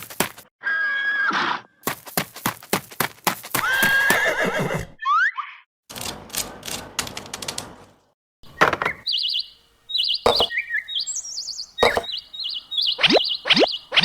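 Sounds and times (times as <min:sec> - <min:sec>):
chirping warbling tones: 0:08.9 - 0:14.0
sharp knocks: 0:10.3 - 0:10.6, 0:11.8 - 0:12.1.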